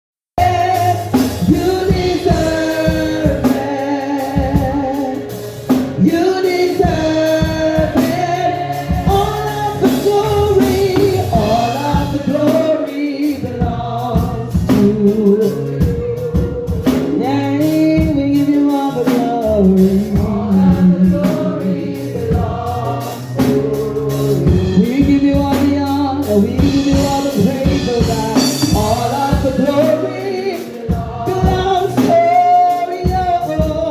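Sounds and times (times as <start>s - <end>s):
bass line: 0.4s - 12.8s, 13.4s - 33.9s
gospel choir singing: 0.4s - 33.9s
drum hits: 23.4s - 30.0s.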